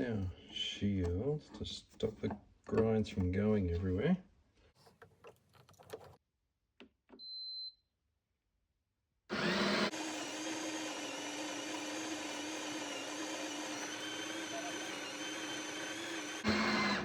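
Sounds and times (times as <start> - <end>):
coffee grinder grinding: 9.3 - 17.0.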